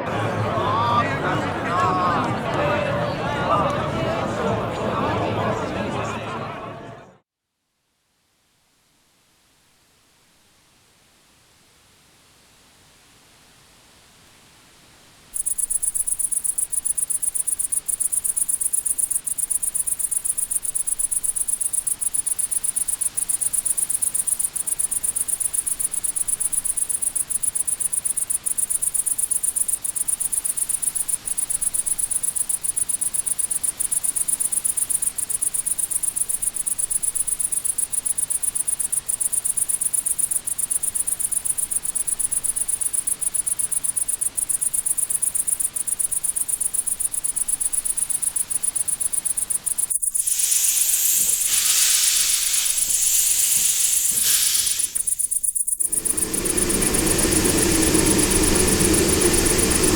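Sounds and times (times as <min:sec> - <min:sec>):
crickets chirping: 0:15.4 - 0:59.9.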